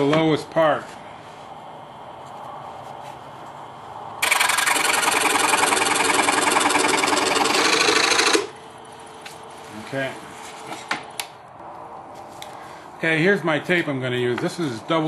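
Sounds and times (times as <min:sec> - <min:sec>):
scroll saw cutting wood: 0:04.2 - 0:08.5.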